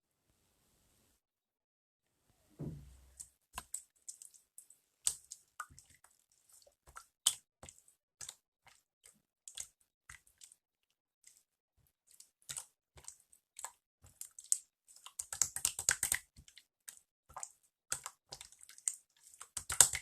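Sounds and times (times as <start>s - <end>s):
dull knock: 2.6s - 3.0s.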